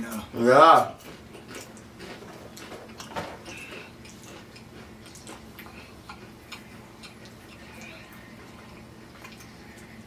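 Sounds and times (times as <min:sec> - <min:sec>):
faint low hum: 0:00.0 - 0:10.0.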